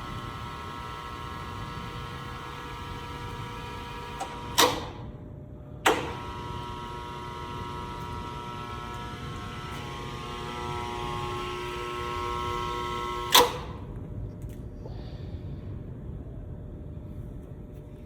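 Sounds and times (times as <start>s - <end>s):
welding positioner humming: 0.0s - 14.3s
loud switch clicks: 2.1s - 5.1s, 5.9s - 13.9s.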